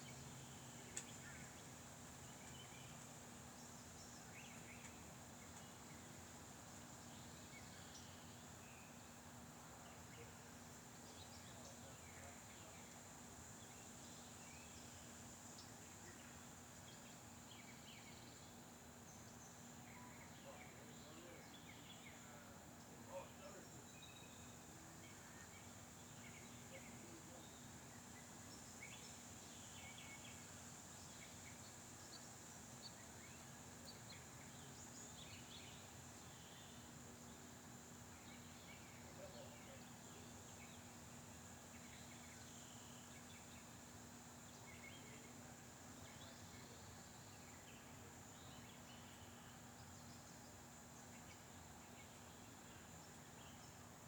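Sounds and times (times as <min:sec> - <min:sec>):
faint chirps: 0:38.2 - 0:43.8.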